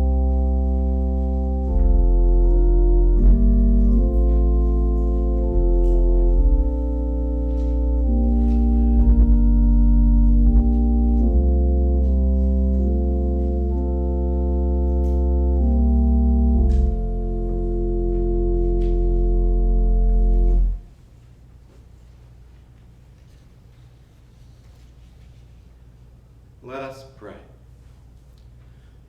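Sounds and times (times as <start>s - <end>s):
organ playing sustained chords: 0.0s - 21.0s.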